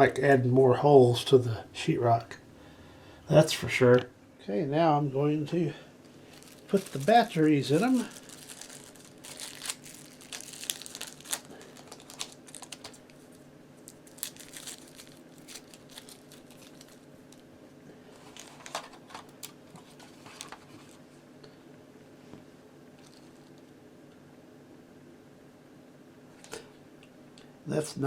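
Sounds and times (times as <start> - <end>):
plastic crinkling: 6.0 - 17.5, 18.1 - 21.0.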